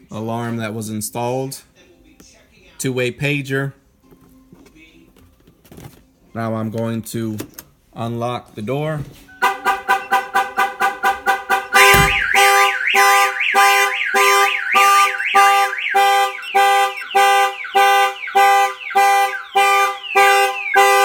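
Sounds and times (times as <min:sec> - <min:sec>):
car alarm beeping: 0:09.3 - 0:21.0
car alarm siren warbling: 0:09.4 - 0:21.0
thump: 0:11.9 - 0:12.4.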